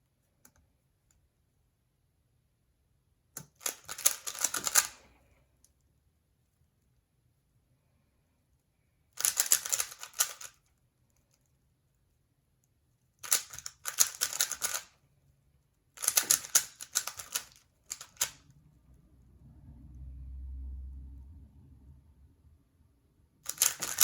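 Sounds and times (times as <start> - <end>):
puzzle cube clicking: 3.4 - 5.1, 9.2 - 10.6, 13.2 - 14.9, 16.0 - 18.4, 23.4 - 24.0.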